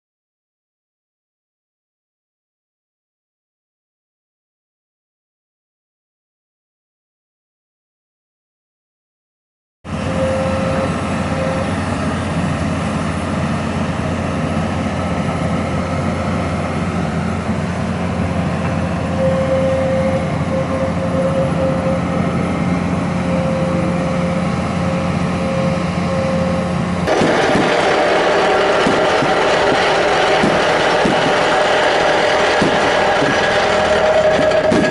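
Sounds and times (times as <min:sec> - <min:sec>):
vibratory pile driver humming: 0:09.9 - 0:34.9.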